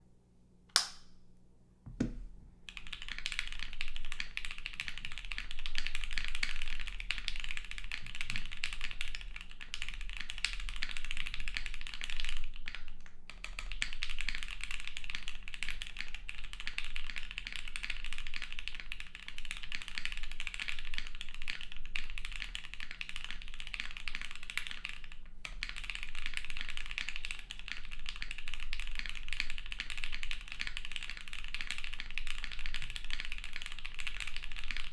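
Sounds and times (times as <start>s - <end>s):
single knock: 1.9s - 2.3s
fast typing on mechanical keyboard: 2.7s - 34.9s.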